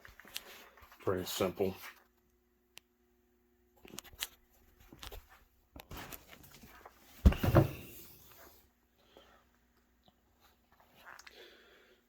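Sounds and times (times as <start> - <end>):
cardboard box thump: 7.2 - 8.0.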